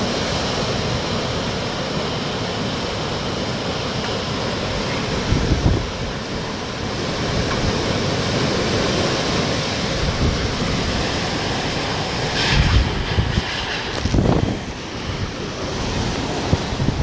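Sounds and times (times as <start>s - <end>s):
wind gusts buffeting microphone: 0.0s - 17.0s
wind rushing: 8.9s - 17.0s.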